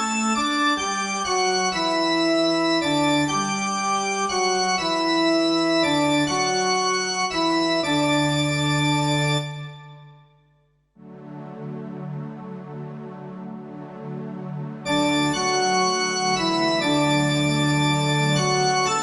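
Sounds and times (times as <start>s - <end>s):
organ playing chords: 0.0s - 10.0s, 14.8s - 19.0s.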